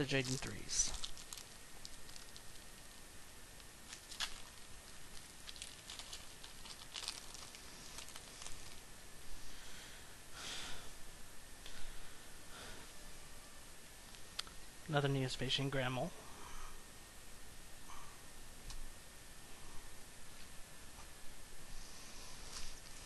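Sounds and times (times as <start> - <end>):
foil wrapper tearing and crinkling: 0.0 - 2.8, 3.8 - 8.8.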